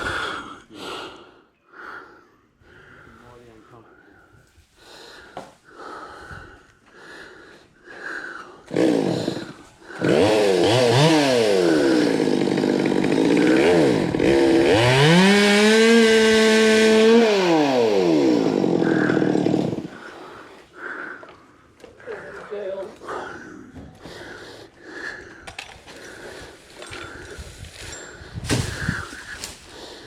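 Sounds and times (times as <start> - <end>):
chainsaw revving: 8.7 - 20.4.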